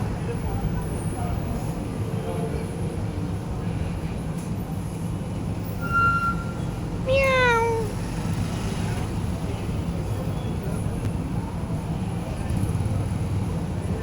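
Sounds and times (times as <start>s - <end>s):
cat meowing: 7.0s - 8.0s.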